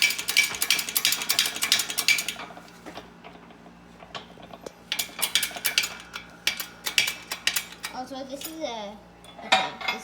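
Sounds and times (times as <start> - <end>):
rapid sharp metallic clicks: 0.0 - 2.4.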